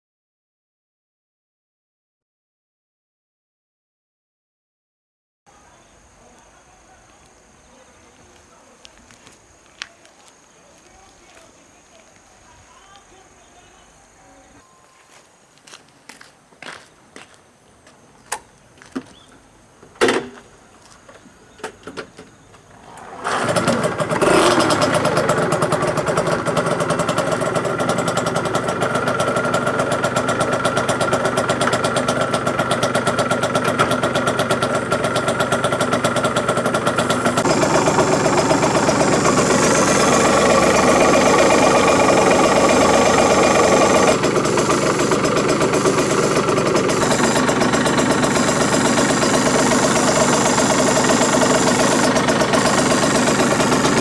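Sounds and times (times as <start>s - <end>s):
two-stroke engine idling: 21.1s - 54.0s.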